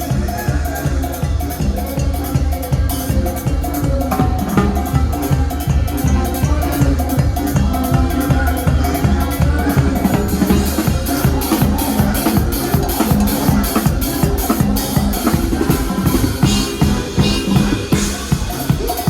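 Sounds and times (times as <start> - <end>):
band playing: 0.0 - 19.0
kick and snare drum beat: 0.0 - 19.0.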